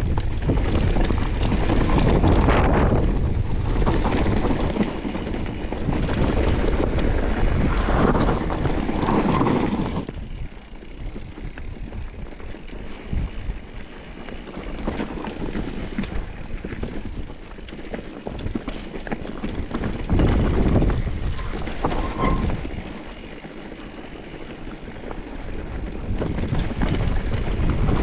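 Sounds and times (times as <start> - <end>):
bike clicks and rattles: 0.0 - 28.0
wind buffeting microphone: 0.0 - 28.0.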